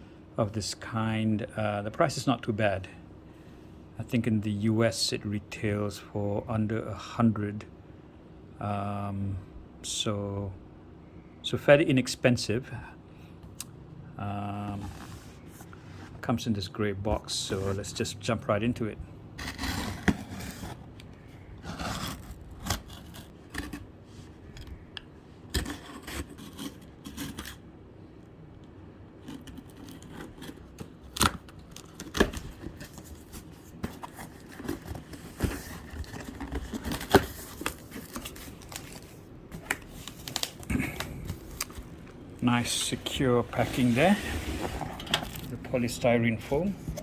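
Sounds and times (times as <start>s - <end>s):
tape and cardboard tearing: 19.4s - 20.9s, 21.6s - 23.8s, 25.5s - 27.6s.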